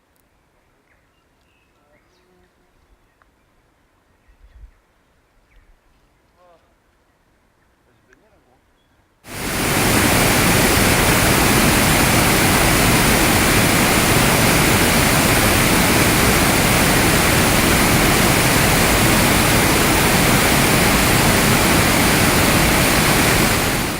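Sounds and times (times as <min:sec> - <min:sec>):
rushing water roar: 0:09.3 - 0:23.9.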